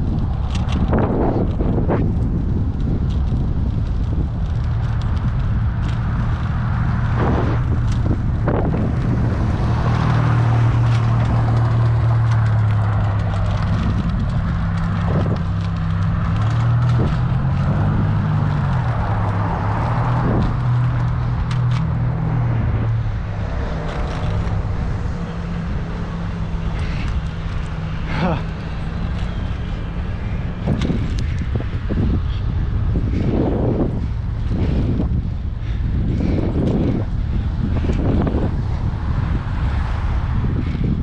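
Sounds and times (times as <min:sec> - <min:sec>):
road noise: 0:00.0 - 0:41.0
vehicle engine running: 0:00.0 - 0:41.0
wind noise: 0:00.0 - 0:41.0.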